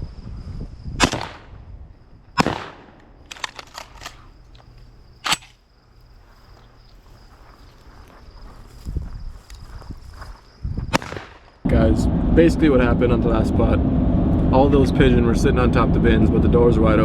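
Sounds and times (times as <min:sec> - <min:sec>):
shotgun shots: 0:01.0 - 0:01.6, 0:02.4 - 0:04.1, 0:10.9 - 0:11.5.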